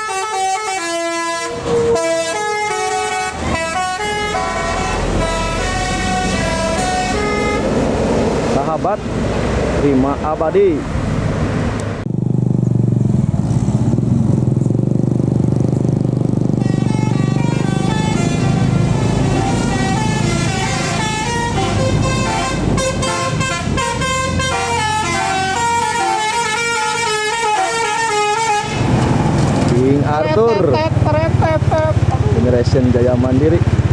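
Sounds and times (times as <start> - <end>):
musical bus horn playing tune: 0.0 - 7.9, 16.5 - 29.0, 30.2 - 32.3
bus engine running: 0.0 - 33.9.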